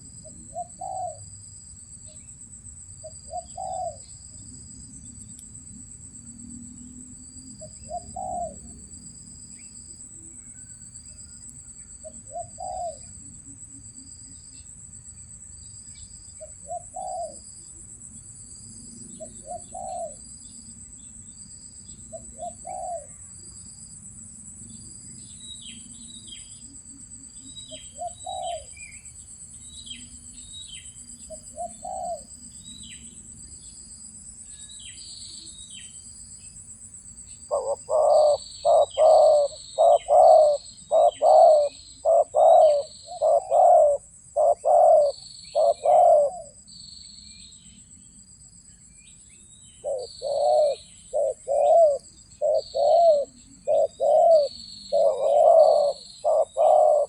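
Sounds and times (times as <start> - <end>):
doves cooing: 0.0 - 1.3, 3.2 - 4.0, 7.7 - 8.8, 12.1 - 13.1, 16.4 - 17.4, 19.2 - 20.2, 22.2 - 23.1, 27.7 - 28.8, 31.3 - 32.4, 37.5 - 46.6, 49.8 - 57.0
high insect drone: 0.0 - 57.0
small birds chirping: 9.5 - 13.2, 15.6 - 17.4, 27.3 - 33.7, 34.5 - 57.0.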